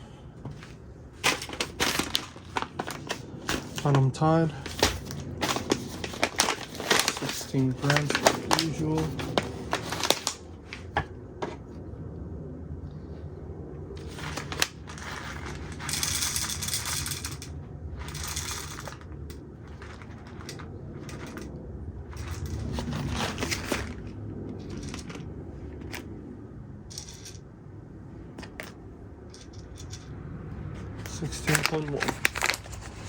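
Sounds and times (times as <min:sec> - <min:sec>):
beans crunching: 0:31.1 - 0:33.0.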